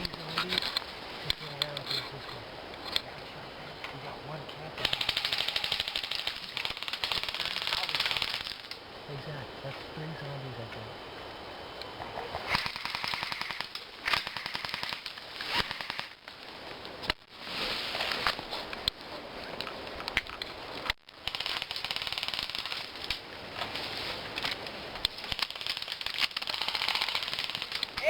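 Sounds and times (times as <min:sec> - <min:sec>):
airsoft guns firing: 0:04.8 - 0:08.6, 0:12.5 - 0:15.0.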